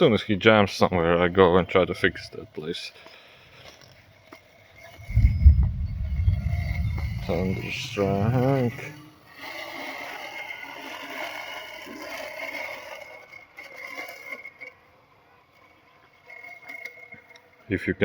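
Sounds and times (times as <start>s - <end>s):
rough scraping hiss: 2.6s - 14.6s
robotic lawn mower whine: 4.2s - 18.0s.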